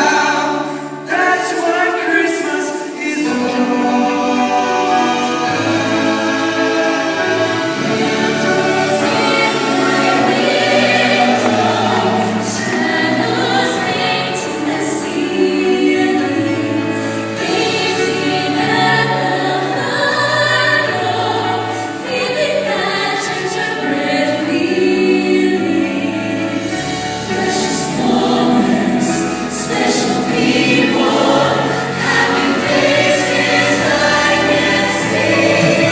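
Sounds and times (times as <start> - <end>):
choir singing: 0.0 - 35.9
musical accompaniment: 0.0 - 35.9.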